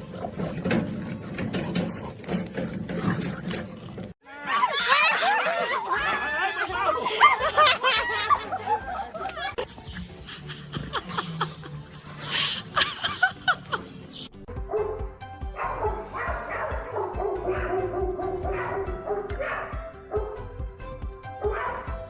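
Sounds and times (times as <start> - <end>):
background music with steady beat: 5.7 - 22.0
dog yipping and barking: 15.6 - 20.4, 21.4 - 22.0.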